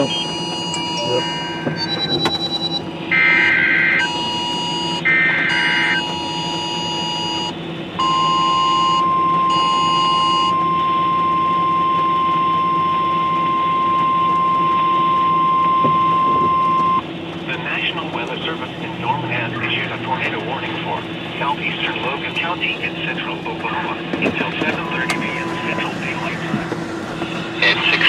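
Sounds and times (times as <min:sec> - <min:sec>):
warbling digital header data: 0:00.0 - 0:02.8
steady piercing alert tone: 0:00.0 - 0:17.0, 0:24.7 - 0:28.0.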